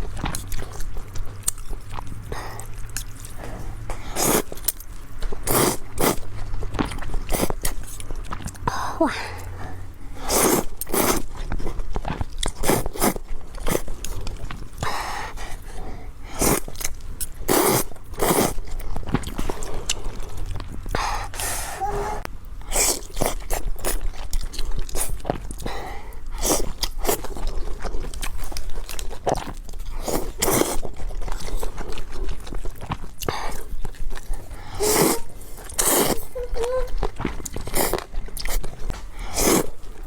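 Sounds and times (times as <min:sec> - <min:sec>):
crunching and chewing food: 0:00.0 - 0:40.0.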